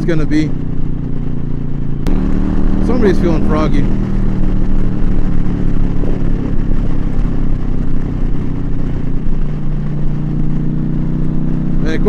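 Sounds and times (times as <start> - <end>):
motorcycle engine running: 0.0 - 12.0
wind rushing over microphone: 0.0 - 12.0.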